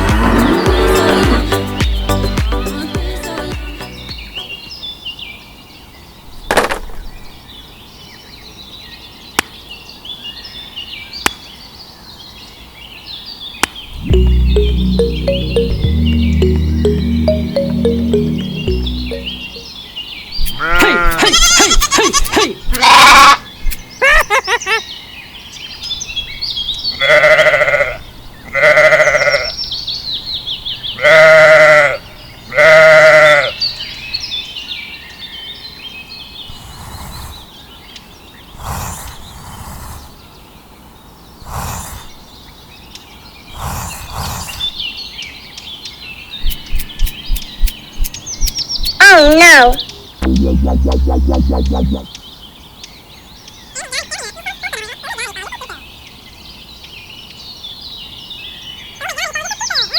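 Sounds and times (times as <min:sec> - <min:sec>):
goats bleating: 0:20.6 - 0:23.1
bird chirps: 0:46.4 - 0:52.1.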